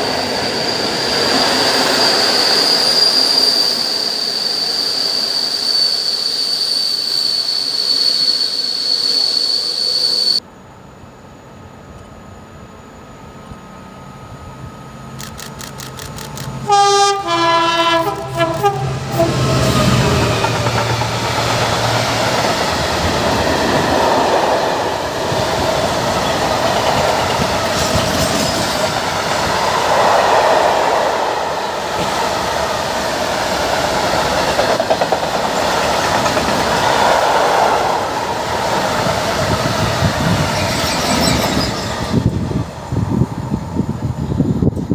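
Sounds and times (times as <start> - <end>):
ringing wheel squeal: 0.0 - 10.4, 40.2 - 42.3
freight train wheels clattering: 19.7 - 30.2, 31.4 - 37.4.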